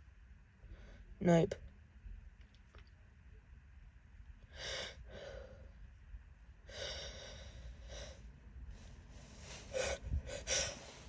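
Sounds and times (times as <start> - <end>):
woman gasping breaths: 9.2 - 11.0.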